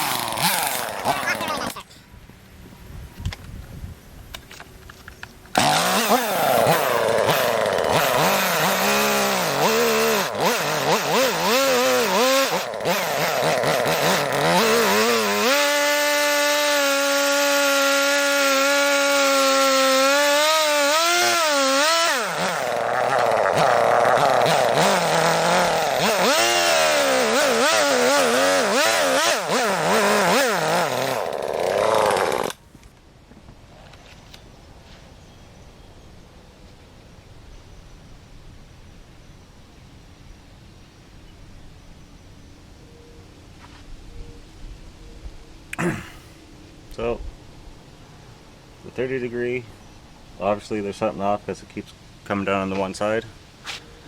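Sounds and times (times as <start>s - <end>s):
chainsaw cutting log: 0.0s - 1.8s, 5.5s - 32.6s, 45.8s - 46.3s.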